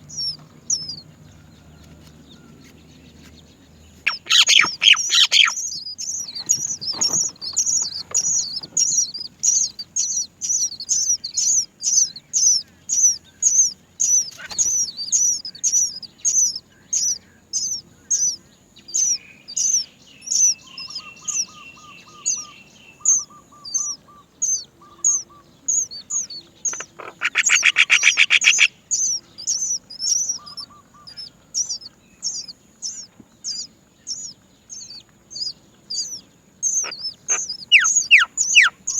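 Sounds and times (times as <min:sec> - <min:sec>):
nestlings begging chirps: 0:00.0 - 0:38.9.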